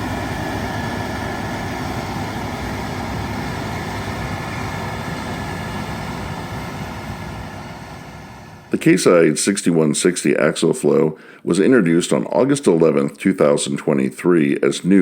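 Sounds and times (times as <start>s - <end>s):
steady whining tones: 0.0s - 9.0s
combine harvester drone: 0.0s - 9.6s.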